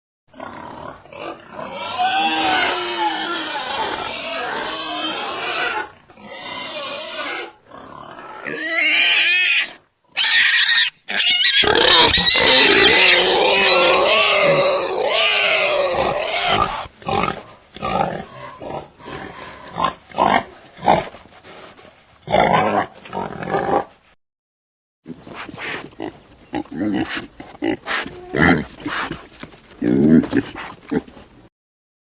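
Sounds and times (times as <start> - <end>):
boar squealing: 1.2 - 7.6, 8.2 - 16.9
boar grunting: 25.1 - 31.4.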